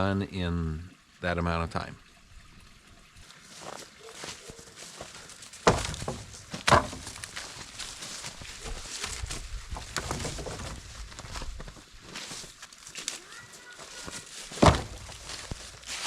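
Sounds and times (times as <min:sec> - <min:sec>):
light crackles and knocks: 0:04.8 - 0:13.2, 0:13.9 - 0:16.0
sharp knocks: 0:05.6 - 0:07.2, 0:14.6 - 0:15.1.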